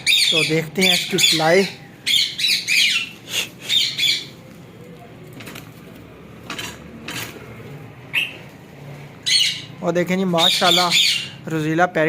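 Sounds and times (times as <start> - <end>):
parrots squawking: 0.0 - 4.5, 8.0 - 11.5.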